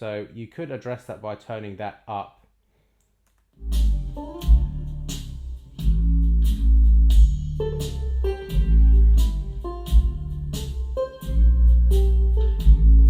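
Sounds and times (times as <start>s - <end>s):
music with deep bass: 3.6s - 13.0s.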